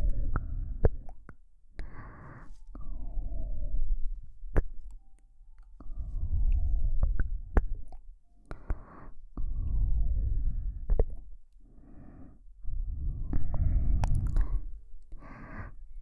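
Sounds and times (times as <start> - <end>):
slow breathing: 1.8 - 3.9, 5.8 - 7.8, 8.4 - 16.0.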